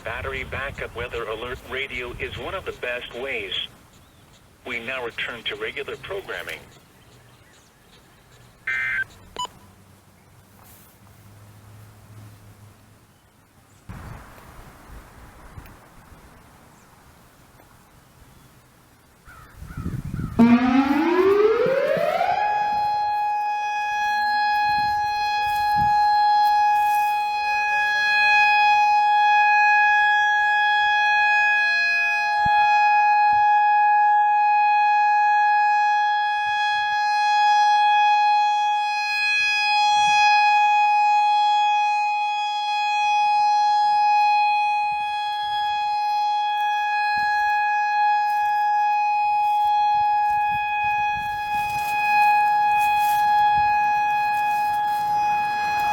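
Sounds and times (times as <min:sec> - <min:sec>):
warning siren steady tone: 0:08.0 - 0:09.7, 0:19.9 - 0:55.9.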